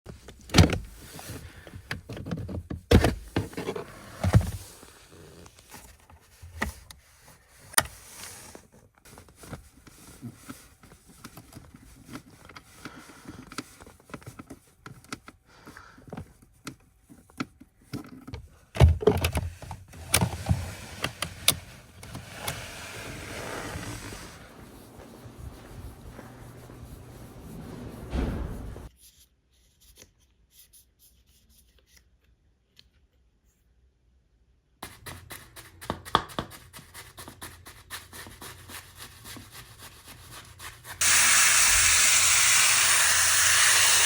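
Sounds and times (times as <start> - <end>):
faint rubbing hiss: 20.3 - 28.9.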